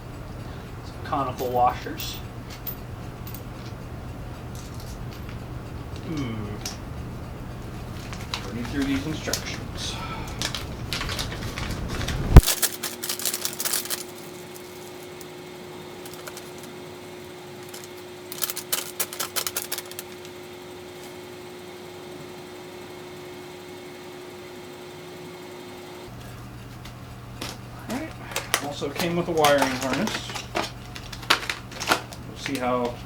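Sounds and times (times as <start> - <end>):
steady hum: 0.0 - 33.0
clicking and rustling: 7.6 - 15.3, 16.0 - 16.8, 17.6 - 20.3, 27.4 - 33.0.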